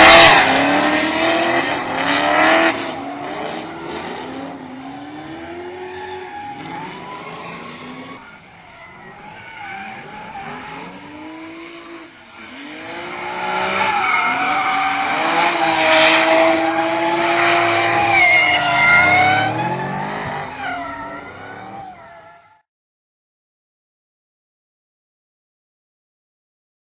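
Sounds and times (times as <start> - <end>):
car engine revving: 0.0 - 22.2
tyre squeal: 1.3 - 22.6.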